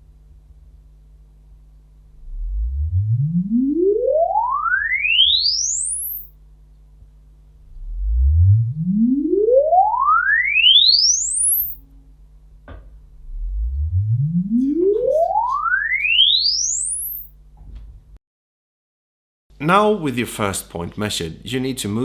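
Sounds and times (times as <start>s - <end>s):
rising sine tone sweeps: 2.1s - 6.5s, 7.6s - 12.2s, 13.0s - 17.5s.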